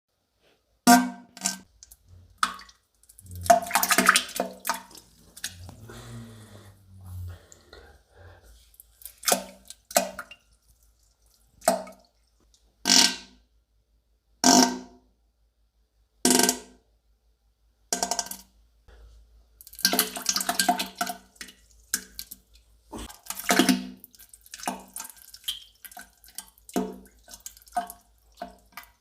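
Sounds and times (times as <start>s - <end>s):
low gurgle: 1.9s - 11.8s
wet sputtering farts: 3.2s - 7.4s.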